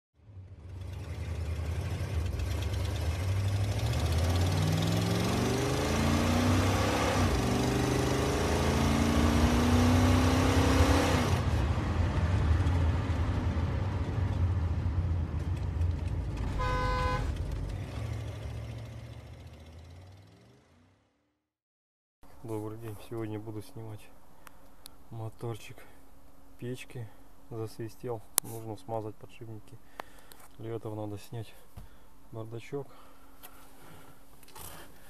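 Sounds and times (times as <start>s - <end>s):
short beep: 16.6s - 17.3s.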